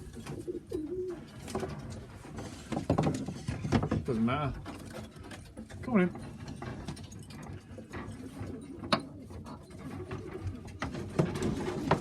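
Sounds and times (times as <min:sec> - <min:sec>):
pigeons cooing: 0:00.0 - 0:02.6, 0:07.3 - 0:12.0.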